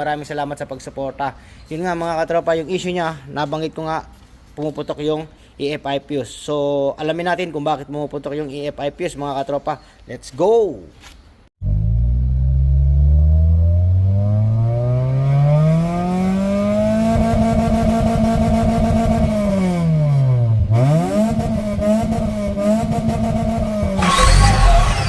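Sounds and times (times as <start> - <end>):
engine revving: 11.6 - 25.0.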